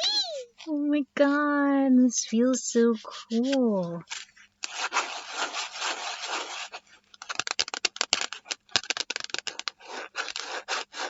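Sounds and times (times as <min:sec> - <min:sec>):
fingernails scratching a palette: 0:02.8 - 0:11.0.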